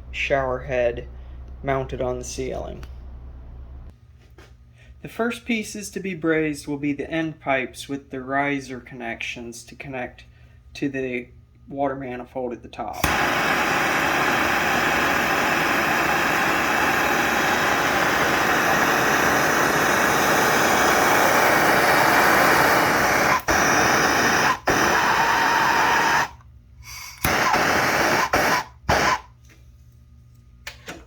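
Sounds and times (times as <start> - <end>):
gas torch flame hissing: 13.0 - 29.3.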